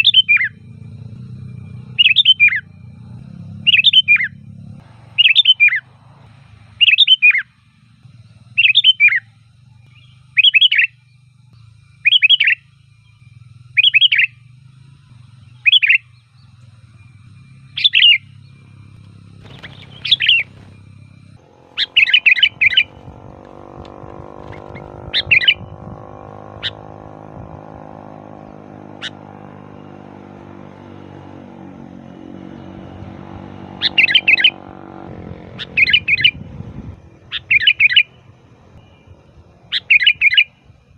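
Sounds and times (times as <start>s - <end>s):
bird singing bubbling phrases: 0.0s - 0.7s, 1.9s - 2.7s, 3.6s - 4.4s, 5.2s - 5.8s, 6.8s - 7.5s, 8.5s - 9.3s, 9.9s - 11.0s, 12.0s - 14.4s, 15.3s - 16.8s, 17.6s - 18.7s, 19.4s - 20.6s, 21.8s - 30.1s, 32.4s - 36.6s, 37.3s - 38.2s, 39.6s - 40.6s
steady low hum: 0.0s - 37.4s.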